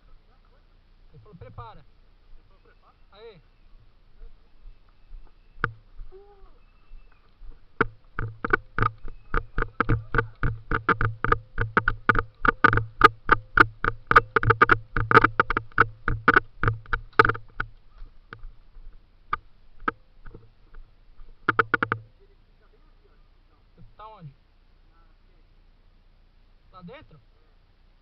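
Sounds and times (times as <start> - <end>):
running footsteps: 2.2 - 22.2
gear jostling: 3.8 - 22.1.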